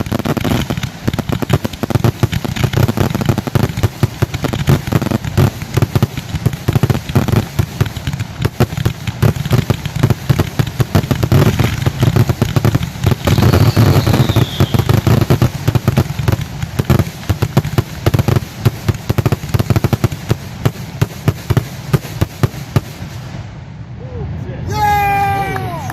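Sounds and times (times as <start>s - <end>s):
fireworks bursts and booms: 0.0s - 24.4s
firework whistle: 13.2s - 15.2s.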